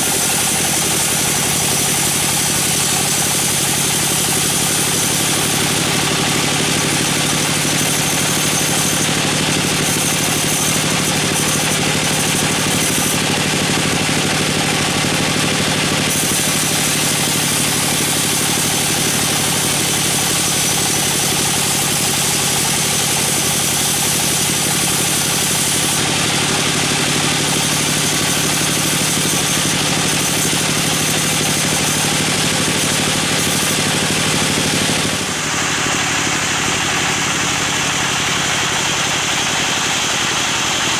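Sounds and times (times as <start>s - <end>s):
saw engine running: 0.0s - 40.9s.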